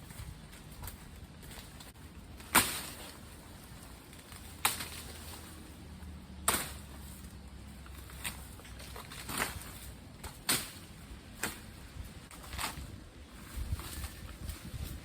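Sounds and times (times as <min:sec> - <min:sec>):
hand tool chopping strikes: 0:06.4 - 0:06.8.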